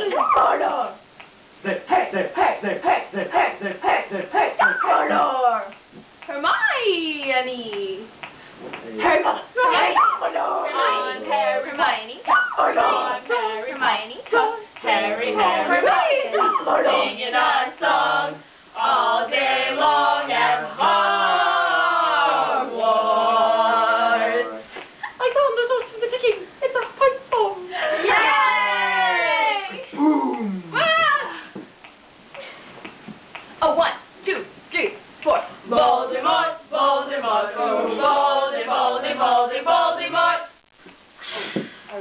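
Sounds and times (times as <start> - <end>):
voices singing unaccompanied: 9.0 - 24.7, 35.2 - 40.6.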